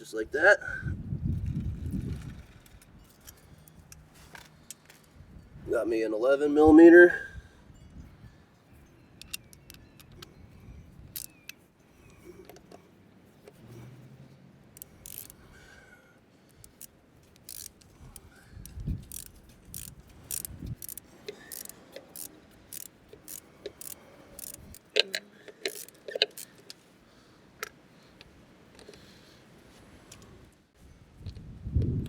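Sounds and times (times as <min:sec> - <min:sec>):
metallic wrench clicks: 0:09.2 - 0:10.3, 0:11.1 - 0:11.6, 0:14.8 - 0:15.5, 0:16.5 - 0:26.8.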